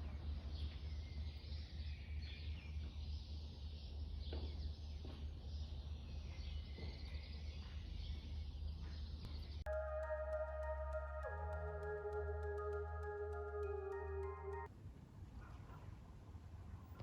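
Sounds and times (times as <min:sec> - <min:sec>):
faint high chirping: 0:09.2 - 0:14.7
mallet percussion music: 0:09.7 - 0:14.7.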